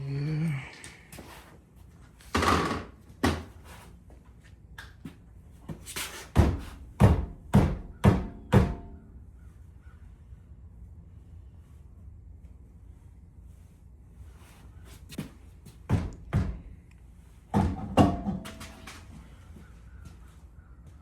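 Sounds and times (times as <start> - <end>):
knocks on a car wheel: 6.4 - 9.0, 17.5 - 18.5.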